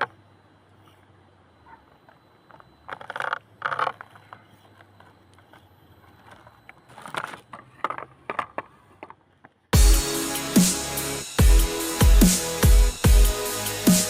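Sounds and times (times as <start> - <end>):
toy car wheels scraping and crunching: 1.9 - 9.8.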